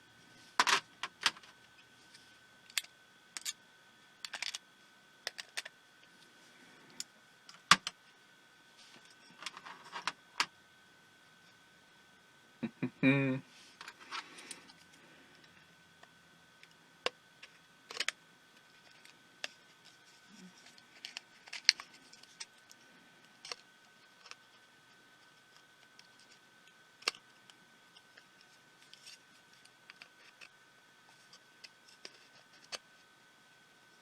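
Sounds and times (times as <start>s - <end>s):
small screws and parts clicking: 2.7s - 3.6s, 4.2s - 4.6s.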